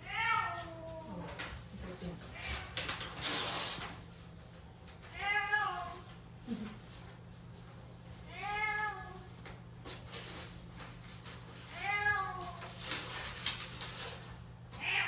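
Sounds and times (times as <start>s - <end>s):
cat meowing: 0.0s - 1.3s, 5.1s - 6.0s, 8.3s - 9.3s, 11.7s - 12.7s.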